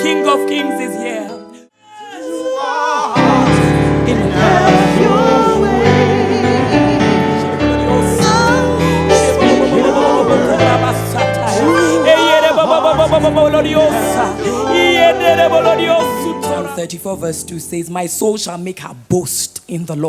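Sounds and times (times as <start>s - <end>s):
voices singing with vibrato: 0.0s - 17.0s
band playing: 3.2s - 16.9s.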